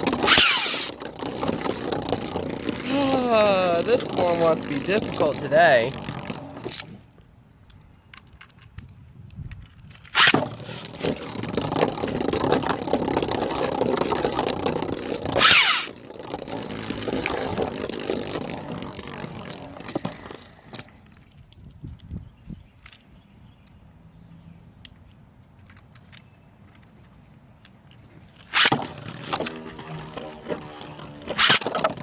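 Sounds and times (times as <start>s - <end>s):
plastic toy clicking: 0.0s - 6.9s, 7.6s - 22.1s, 28.4s - 32.0s
spinning top rattling whirr: 0.0s - 7.0s, 10.0s - 21.0s, 28.4s - 32.0s.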